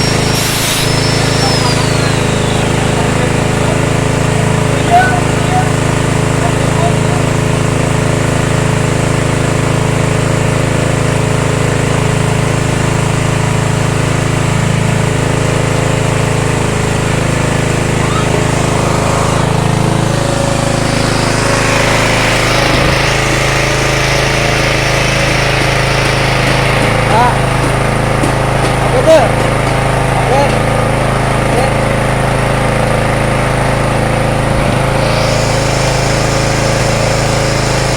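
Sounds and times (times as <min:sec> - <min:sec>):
harsh hissing machine noise: 0:00.0 - 0:37.9
petrol engine running: 0:00.0 - 0:37.9.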